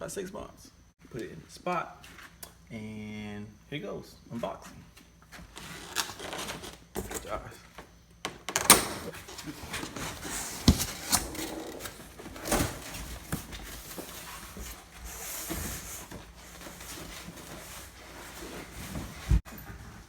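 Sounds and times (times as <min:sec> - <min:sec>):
packaging rustling: 0:09.2 - 0:19.4.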